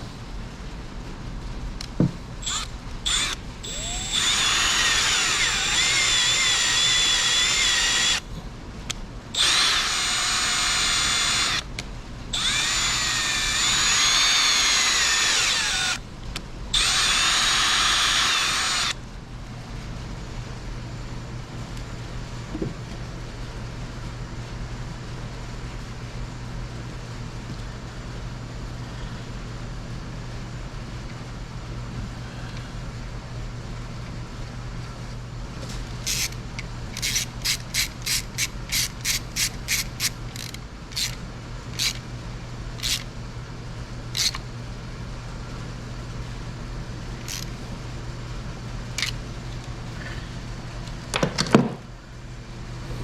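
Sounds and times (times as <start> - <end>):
steady low hum: 0.0 - 51.2, 51.8 - 53.0
power drill whining into metal: 2.4 - 8.2, 9.4 - 11.7, 12.4 - 16.0, 16.8 - 19.0, 36.0 - 36.4, 37.0 - 41.2, 41.8 - 42.0, 42.8 - 43.1, 44.2 - 44.4, 47.2 - 47.5.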